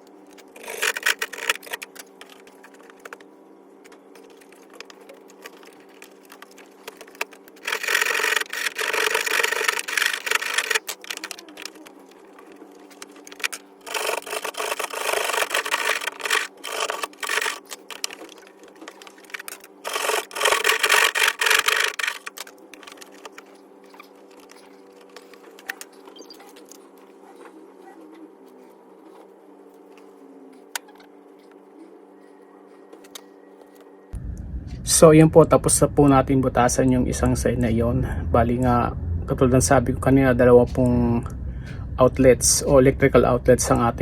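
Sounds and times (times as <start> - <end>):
faint steady hum: 0.0 - 44.0
saw cutting through wall: 13.8 - 17.7, 19.8 - 22.3.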